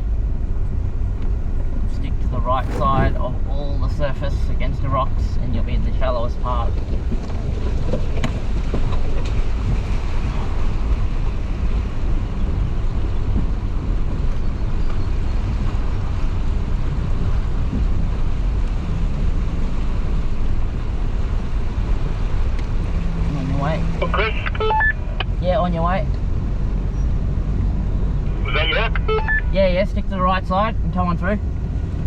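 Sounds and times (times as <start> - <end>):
water washing around vehicle: 0.0 - 3.5, 5.8 - 32.0
vehicle engine rumble: 0.0 - 32.0
wind buffeting microphone: 1.3 - 3.9.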